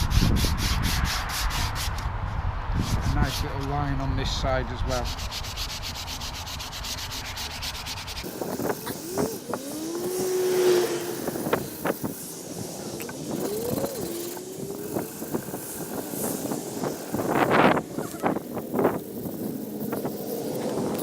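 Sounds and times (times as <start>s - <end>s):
sandpaper rubbing on wood: 0.0s - 2.0s, 2.8s - 3.8s, 4.8s - 21.0s
vehicle engines rising in pitch: 8.2s - 21.0s.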